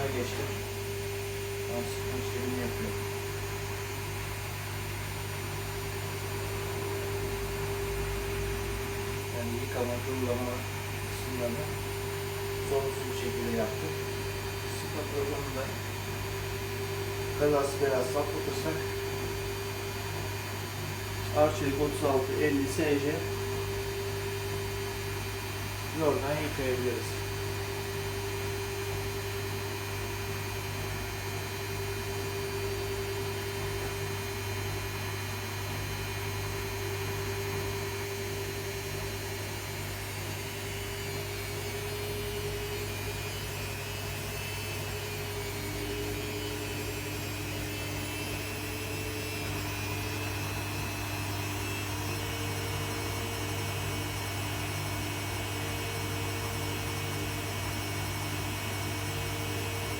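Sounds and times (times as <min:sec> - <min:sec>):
washing machine spinning: 0:00.0 - 0:26.4, 0:27.0 - 0:59.9
lower motor whine: 0:00.0 - 0:59.9.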